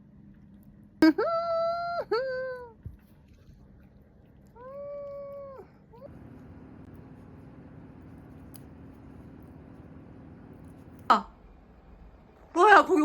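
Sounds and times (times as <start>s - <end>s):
steady low hum: 2.4s - 13.0s
dog whining: 4.5s - 6.1s.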